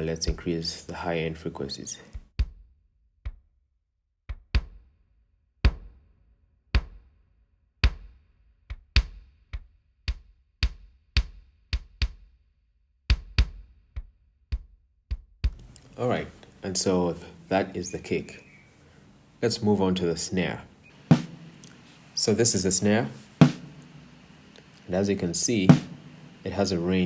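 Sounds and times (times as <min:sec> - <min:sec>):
kick drum hits: 0:21.1 - 0:21.6, 0:23.2 - 0:23.9, 0:25.7 - 0:26.2.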